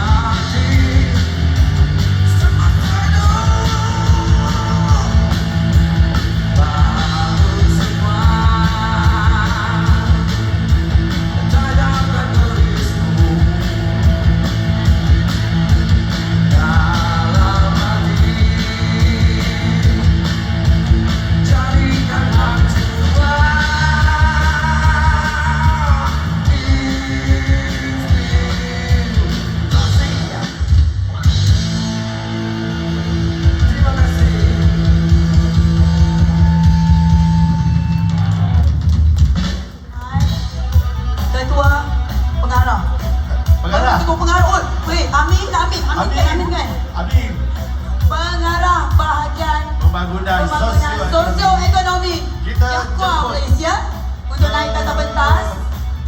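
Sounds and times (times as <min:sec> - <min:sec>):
lead singer singing: 0:00.0 - 0:14.5, 0:15.9 - 0:32.4
rock band playing: 0:00.0 - 0:56.0.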